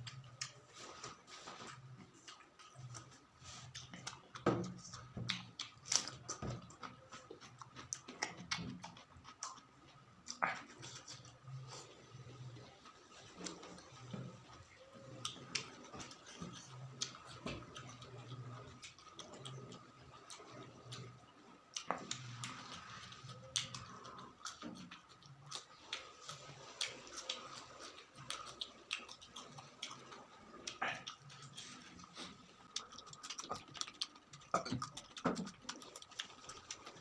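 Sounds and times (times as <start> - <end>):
person chewing: 0.0 - 37.0.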